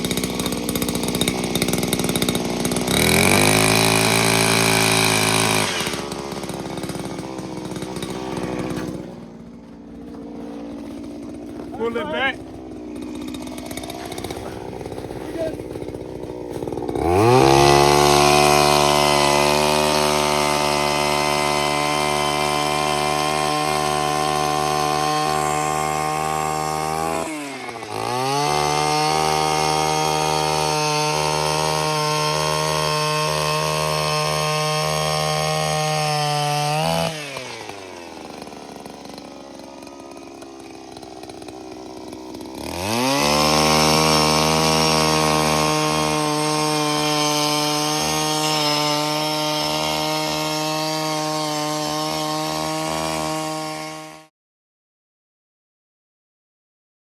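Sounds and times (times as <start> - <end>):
power ice auger whining: 0.0 - 54.3.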